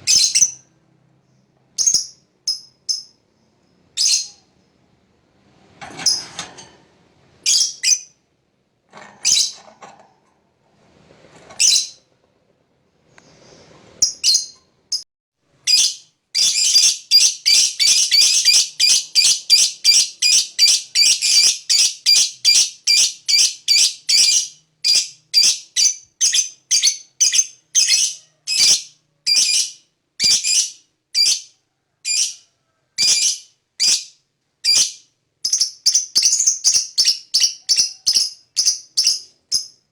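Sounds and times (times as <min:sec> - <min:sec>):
lovebird chirping and trilling: 0:00.0 - 0:00.7, 0:01.8 - 0:03.2, 0:04.0 - 0:04.5, 0:07.4 - 0:08.2, 0:09.2 - 0:09.6, 0:11.6 - 0:12.0, 0:14.0 - 0:15.0, 0:15.6 - 0:32.4, 0:33.0 - 0:39.8.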